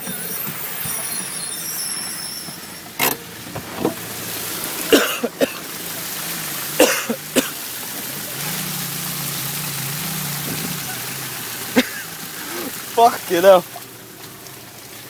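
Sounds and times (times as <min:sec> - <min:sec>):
faint low engine hum: 0:00.0 - 0:15.0
water rushing: 0:00.0 - 0:15.0
sharp knocks or splashes: 0:03.0 - 0:14.4.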